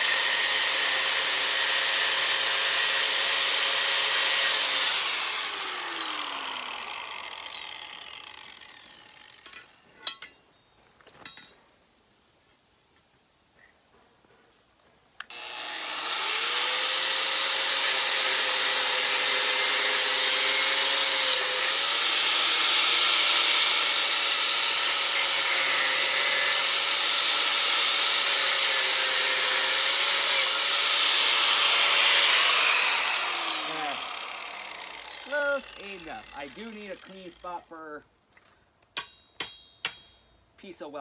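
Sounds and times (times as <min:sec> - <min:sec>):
electric grinder running: 0:00.0 - 0:09.4, 0:15.3 - 0:37.4.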